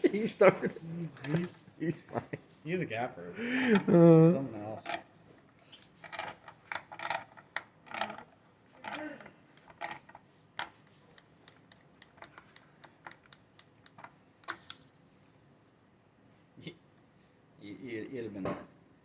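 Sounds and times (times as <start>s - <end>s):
sharp metallic clink ringing: 14.5s - 15.9s.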